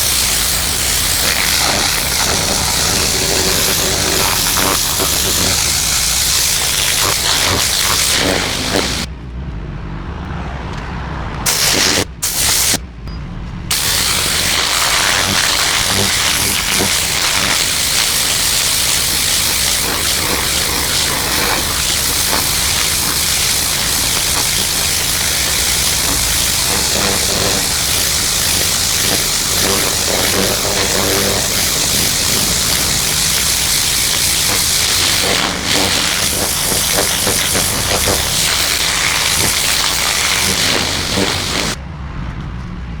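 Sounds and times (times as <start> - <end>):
pressure washer running hum: 0.0 - 9.1, 11.5 - 12.8, 13.7 - 41.8
pressure washer spraying concrete: 0.0 - 9.1, 11.5 - 12.8, 13.7 - 41.8.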